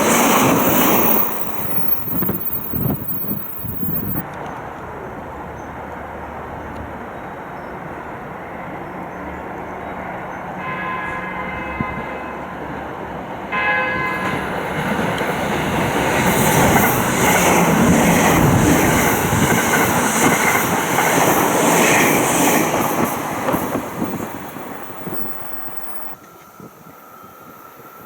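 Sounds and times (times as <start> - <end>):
train rushing past: 0.0 - 4.2, 11.9 - 26.2
wheels clacking over rail joints: 0.0 - 4.2, 14.1 - 26.2
train horn blasts: 10.6 - 12.8, 13.5 - 14.5.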